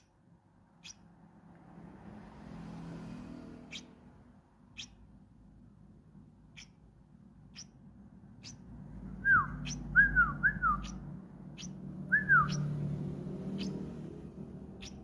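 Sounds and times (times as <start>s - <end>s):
small bird chirping: 0.0s - 15.0s
bird whistled notes: 9.2s - 11.0s, 11.6s - 12.8s, 13.5s - 13.8s.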